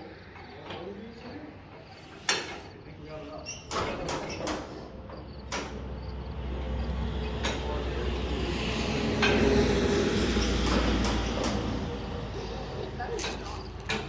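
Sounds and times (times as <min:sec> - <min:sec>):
engine turning over rumble: 0:05.6 - 0:14.0.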